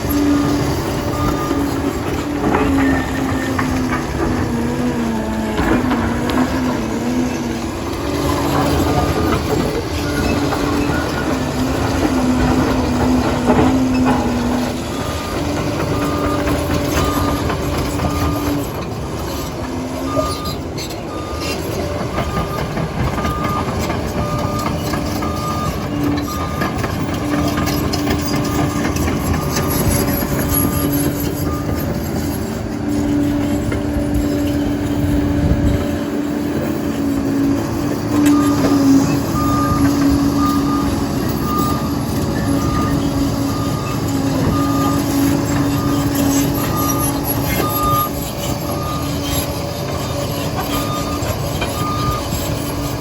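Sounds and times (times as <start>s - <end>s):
reversing alarm beeping: 0.0s - 4.5s, 8.1s - 32.6s, 37.5s - 52.9s
dozer diesel engine: 0.0s - 53.0s
steel tracks clanking: 0.0s - 53.0s.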